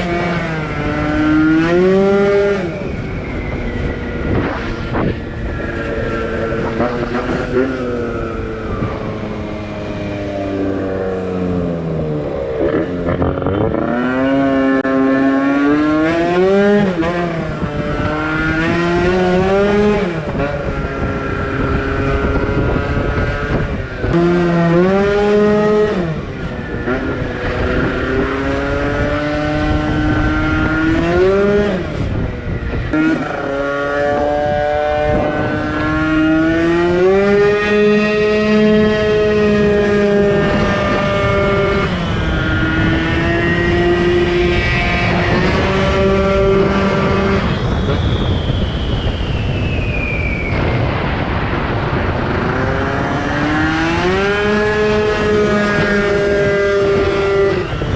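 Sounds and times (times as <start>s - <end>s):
scooter engine revving: 24.1s - 32.2s, 32.9s - 47.2s.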